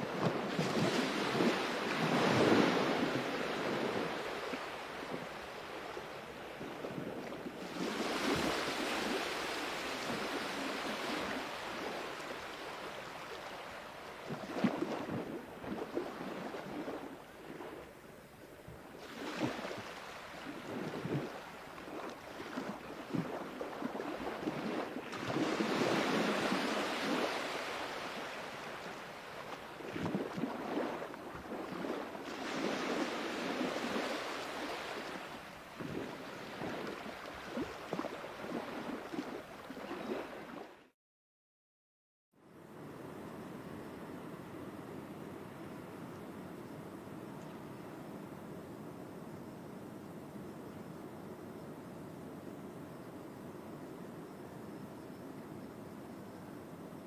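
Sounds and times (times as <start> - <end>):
sea waves breaking ashore: 0.0 - 40.9.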